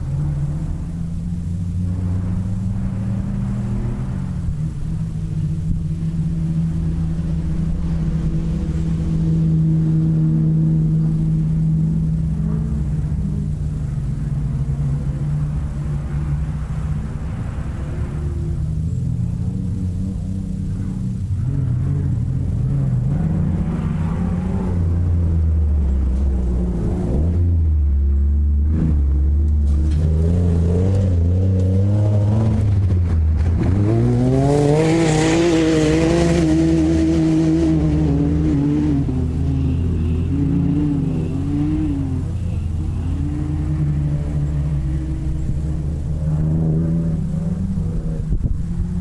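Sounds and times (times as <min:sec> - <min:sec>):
buggy engine revving: 0:00.0 - 0:49.0.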